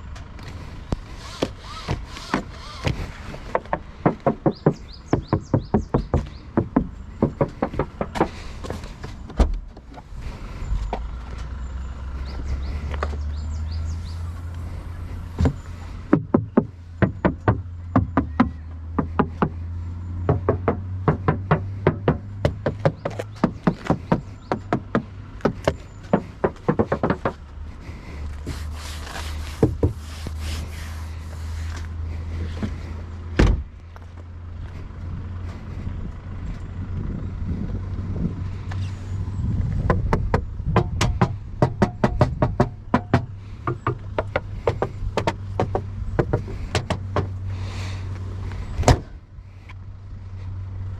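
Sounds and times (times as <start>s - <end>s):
car engine humming: 0.0s - 50.9s
engine knocking: 1.2s - 9.0s, 15.4s - 28.1s, 39.7s - 47.6s.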